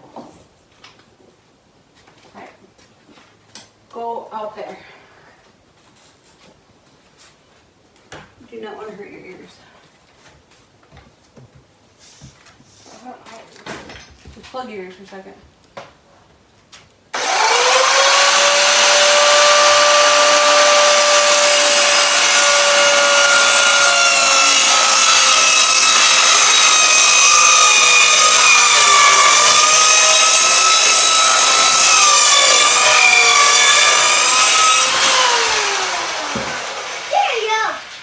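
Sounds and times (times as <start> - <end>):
power tool motor whining: 17.2 - 37.2.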